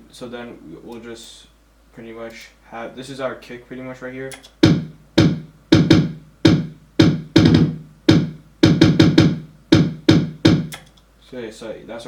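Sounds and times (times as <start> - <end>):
kick drum hits: 4.6 - 10.8.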